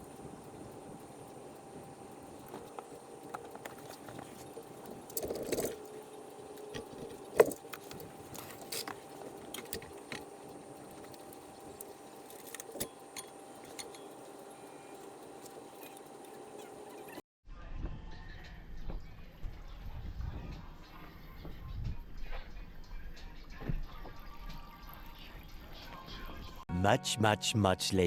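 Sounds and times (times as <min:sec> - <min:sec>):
faint steady hum: 0:00.0 - 0:17.2.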